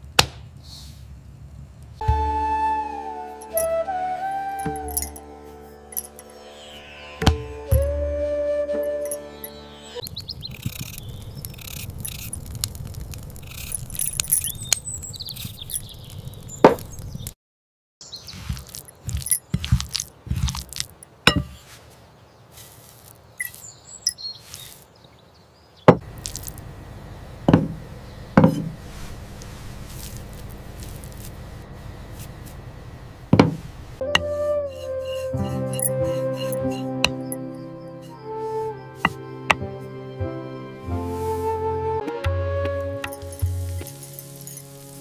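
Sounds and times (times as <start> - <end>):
crockery and utensils clinking: 4.6 - 5.2, 34.1 - 38.2, 43.0 - 45.0
low steady background: 18.4 - 45.0
sharp knocks: 27.5 - 27.8.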